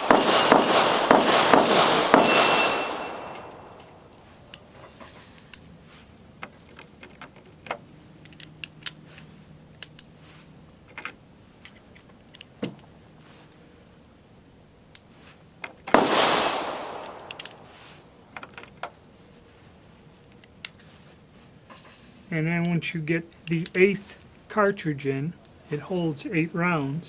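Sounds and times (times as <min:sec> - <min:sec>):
loud sharp cracks: 0:00.0 - 0:04.2, 0:15.9 - 0:17.8.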